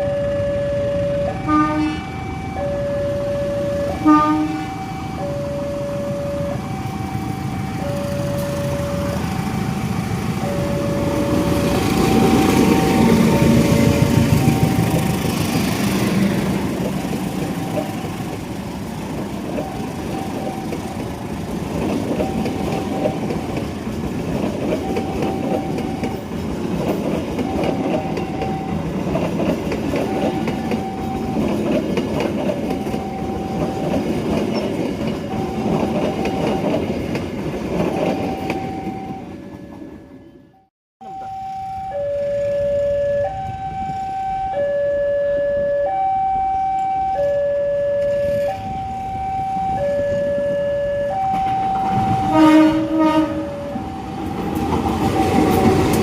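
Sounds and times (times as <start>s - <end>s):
two-tone signal: 0.0s - 14.9s, 19.6s - 21.0s, 22.2s - 23.3s, 24.8s - 26.2s, 27.4s - 28.9s, 30.0s - 31.6s, 32.7s - 34.1s, 38.0s - 54.4s
train wheels clattering on rails: 11.3s - 39.9s, 53.7s - 56.0s.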